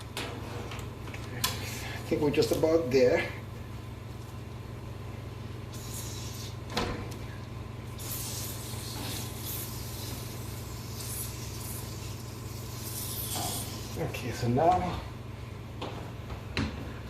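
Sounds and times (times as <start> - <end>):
steady low hum: 0.0 - 17.0
water spray hissing: 5.7 - 6.6, 8.0 - 14.1.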